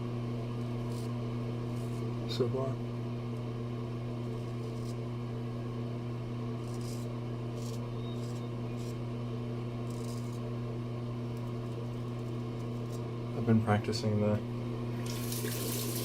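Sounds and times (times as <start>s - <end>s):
low electrical hum: 0.0s - 16.0s
straight razor scraping stubble: 0.6s - 2.2s, 4.2s - 5.1s, 6.5s - 10.6s, 11.3s - 13.1s.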